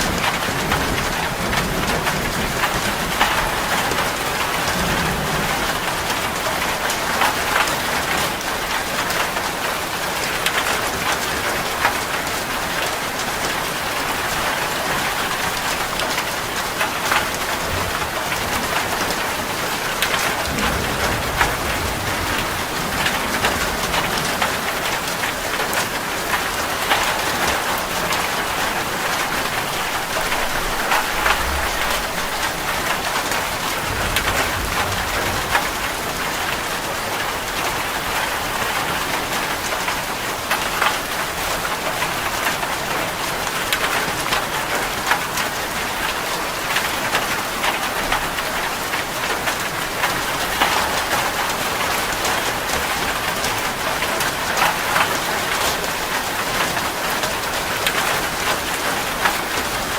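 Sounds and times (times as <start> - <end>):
rain drops ticking on hard surface: 0.0 - 59.9
rain hiss: 0.0 - 59.9
low rumbles: 17.3 - 25.7, 29.2 - 37.9.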